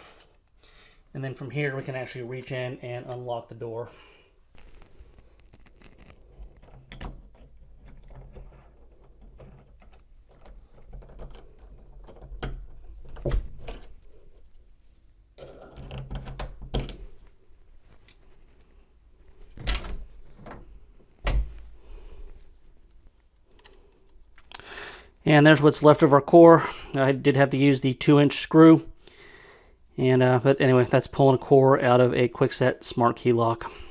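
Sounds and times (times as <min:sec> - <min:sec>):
deadbolt mechanism clicking and scraping: 0:19.5 - 0:21.7.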